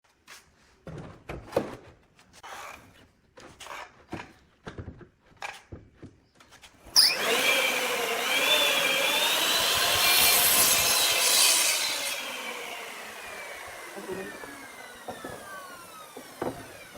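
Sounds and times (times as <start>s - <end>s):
table saw cutting wood: 6.8s - 16.9s.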